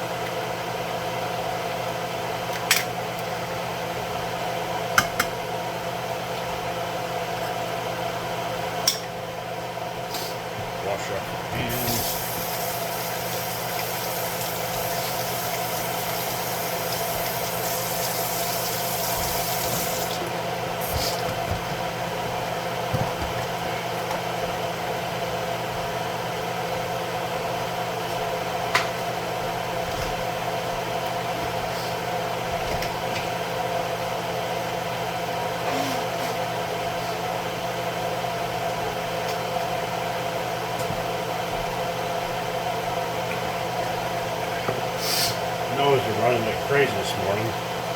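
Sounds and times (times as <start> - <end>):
steady mechanical hum: 0.0 - 47.9
tap water running: 11.3 - 23.7.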